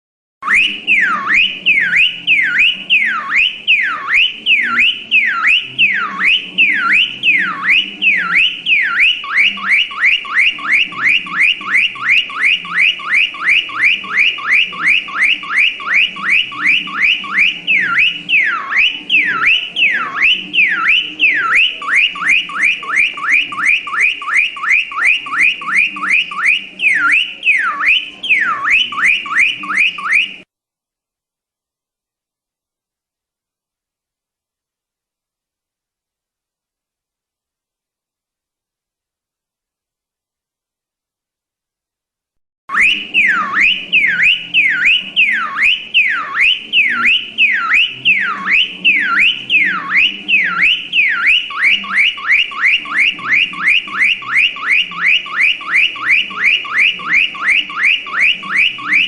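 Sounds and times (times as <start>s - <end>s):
car alarm siren whooping: 0.4s - 30.5s, 42.7s - 59.0s.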